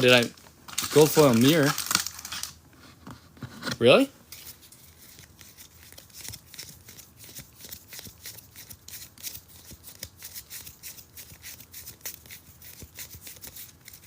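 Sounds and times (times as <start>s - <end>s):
trading cards flipped by hand: 4.3s - 14.0s.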